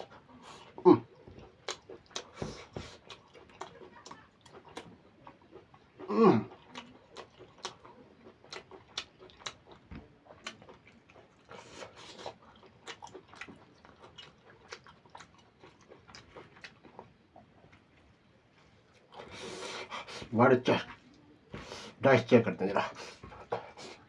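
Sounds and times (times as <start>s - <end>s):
wet chewing: 0.0s - 18.1s.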